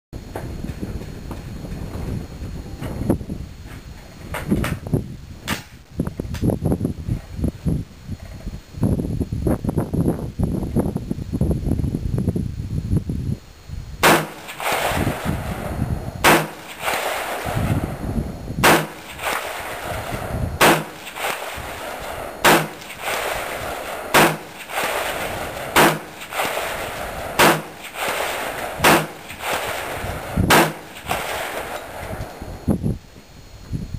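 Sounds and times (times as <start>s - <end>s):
wind buffeting microphone: 0.2s - 33.9s
rifle shots with echo: 14.0s - 18.0s, 18.6s - 32.4s.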